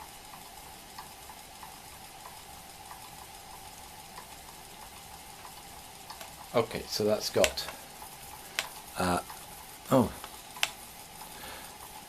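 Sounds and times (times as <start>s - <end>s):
lathe motor whirring hum: 0.0s - 12.0s
faint light ticks: 0.3s - 6.5s.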